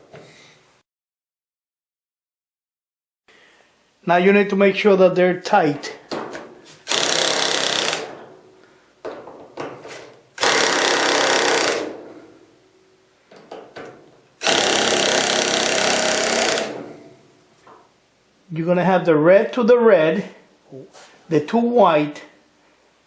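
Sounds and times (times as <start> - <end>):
cordless power driver running: 10.4 - 11.9, 14.4 - 16.8.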